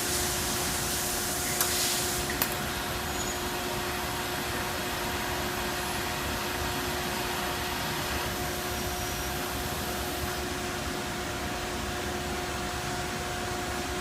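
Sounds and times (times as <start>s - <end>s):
machinery hiss: 0.0s - 3.8s.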